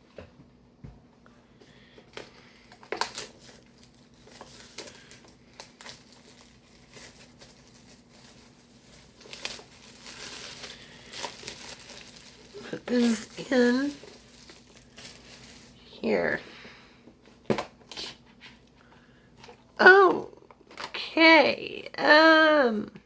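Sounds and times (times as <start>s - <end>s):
plastic wrapping crinkling and tearing: 2.0s - 16.6s.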